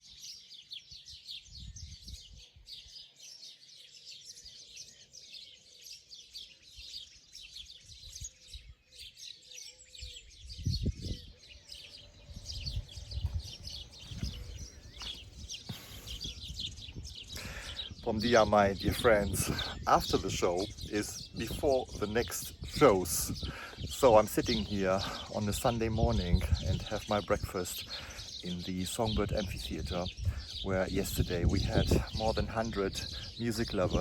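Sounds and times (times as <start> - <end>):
birds chirping and singing: 0.0 - 34.0
low rumbling thumps: 12.4 - 17.2.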